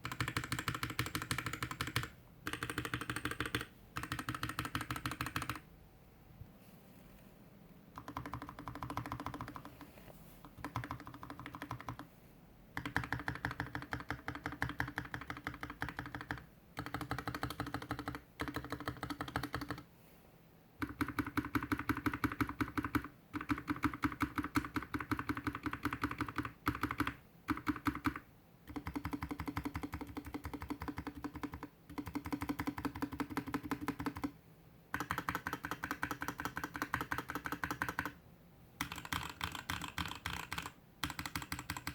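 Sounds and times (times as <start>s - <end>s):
mechanical keyboard typing: 0.0s - 5.6s, 7.9s - 12.1s, 12.8s - 19.9s, 20.8s - 38.2s, 38.8s - 41.9s.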